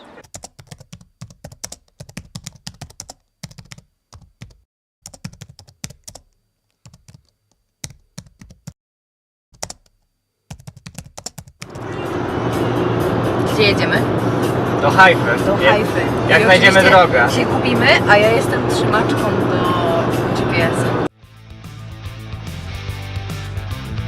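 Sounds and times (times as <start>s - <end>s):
quick irregular clicks and taps: 9.6s - 11.7s.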